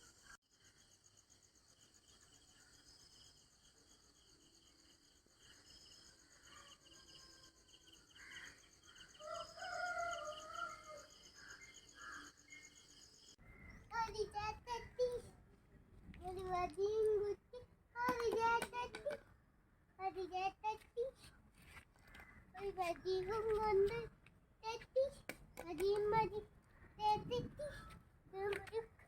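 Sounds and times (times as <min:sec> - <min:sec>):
insects chirring: 0:00.0 - 0:13.4
rooster crowing: 0:09.0 - 0:11.6.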